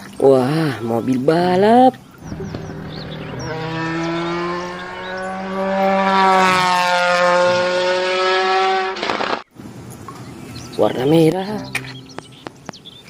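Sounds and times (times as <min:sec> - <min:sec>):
race car engine drone: 0:02.2 - 0:09.0.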